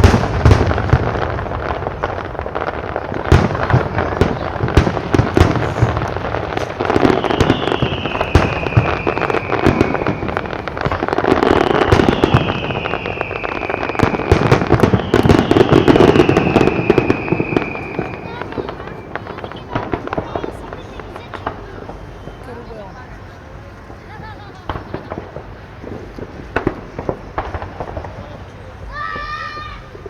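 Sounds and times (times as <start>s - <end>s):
falling firework whistles: 0.0s - 22.9s
fireworks bangs and crackling: 0.0s - 30.0s.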